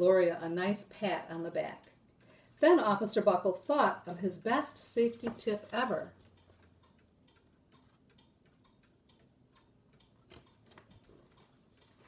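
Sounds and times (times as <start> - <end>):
faint regular ticking: 0.8 - 2.5, 4.0 - 12.0.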